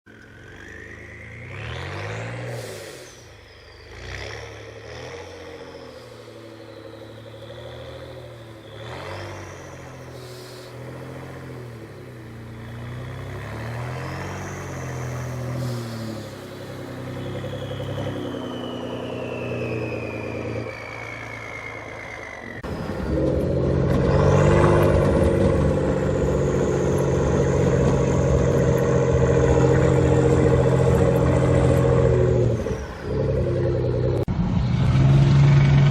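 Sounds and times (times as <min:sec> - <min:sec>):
truck engine revving: 0:00.1 - 0:35.9
turbo whistle: 0:14.3 - 0:23.2.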